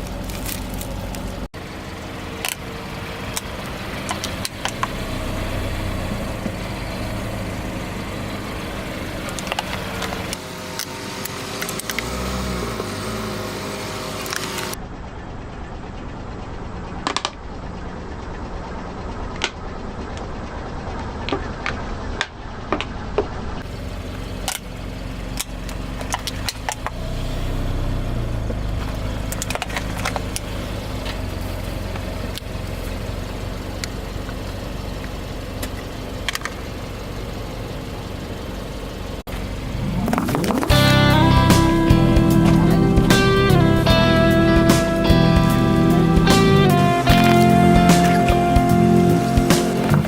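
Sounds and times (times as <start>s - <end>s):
tyres crushing brittle objects: 0.0s - 1.5s
car engine running slowly: 0.0s - 50.0s.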